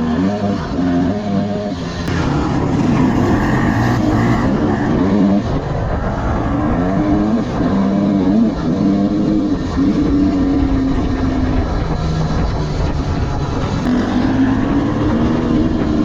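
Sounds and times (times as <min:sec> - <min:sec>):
dirt bike engine revving: 0:00.0 - 0:16.0.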